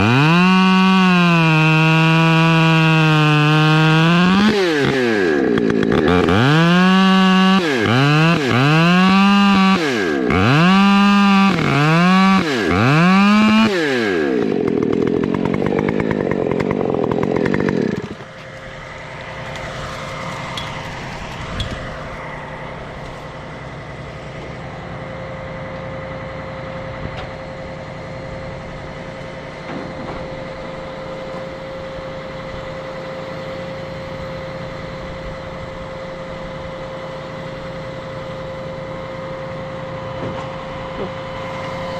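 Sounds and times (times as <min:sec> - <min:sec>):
chainsaw engine revving: 0:00.0 - 0:26.0.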